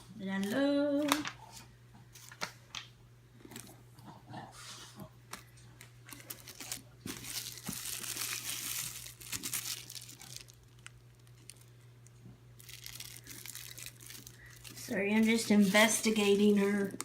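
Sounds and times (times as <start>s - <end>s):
packaging crinkling and rustling: 5.3s - 11.8s, 12.6s - 17.0s.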